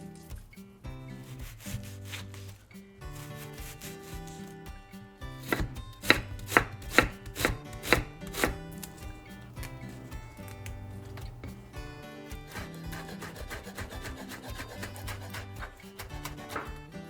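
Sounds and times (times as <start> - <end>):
knife chopping on cutting board: 1.2 - 4.6, 5.4 - 16.9.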